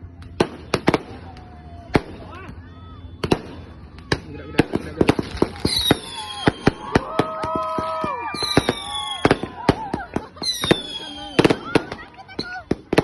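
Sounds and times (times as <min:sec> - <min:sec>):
fireworks popping: 0:00.1 - 0:02.6, 0:03.2 - 0:13.0
high falling whistles: 0:05.7 - 0:07.0, 0:07.9 - 0:09.7.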